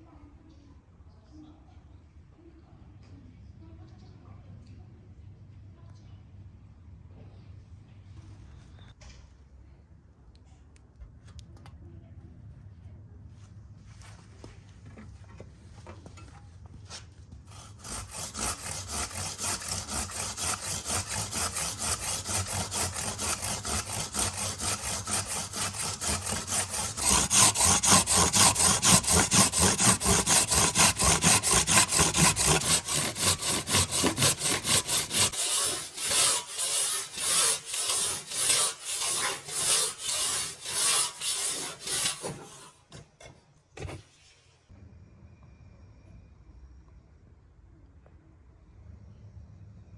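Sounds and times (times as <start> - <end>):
handsaw cutting timber: 17.5 - 44.0.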